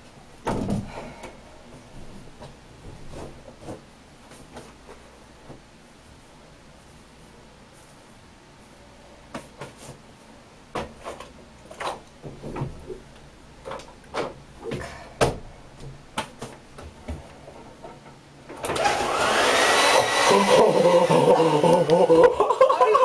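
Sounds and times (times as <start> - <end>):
hair dryer blowing: 18.7 - 22.3.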